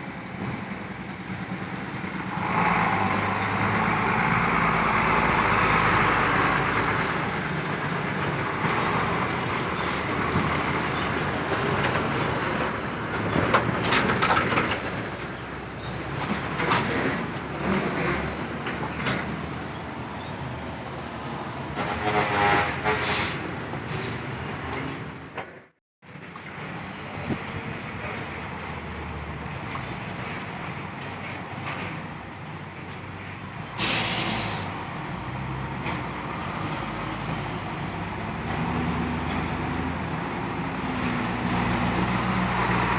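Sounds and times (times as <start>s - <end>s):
heavy road traffic: 0.0s - 42.9s
truck passing: 0.0s - 42.9s
multi-tone air horn: 21.8s - 23.4s.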